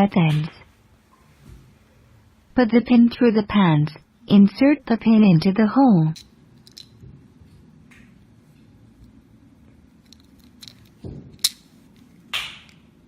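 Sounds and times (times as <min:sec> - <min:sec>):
pin clicking into tag lock: 0:10.0 - 0:11.7.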